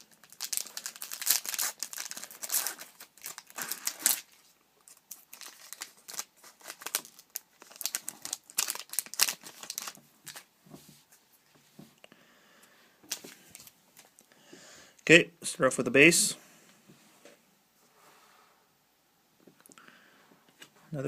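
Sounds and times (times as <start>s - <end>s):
card pack wrapper tearing and crinkling: 0.0s - 10.5s.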